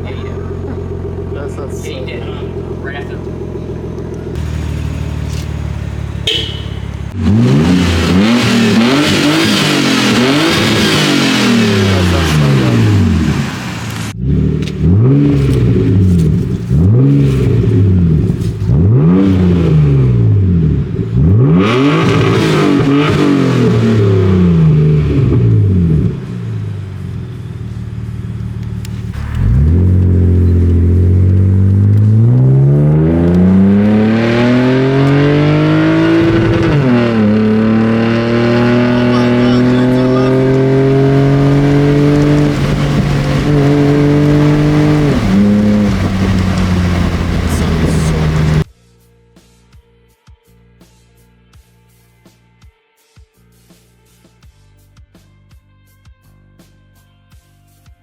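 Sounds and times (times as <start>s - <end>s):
car engine revving: 0.0s - 48.7s.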